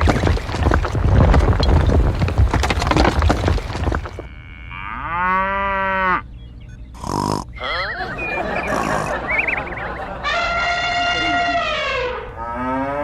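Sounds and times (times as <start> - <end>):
clatter of knocks and bangs: 0.0 - 4.3
cow mooing: 4.3 - 6.2, 10.7 - 13.0.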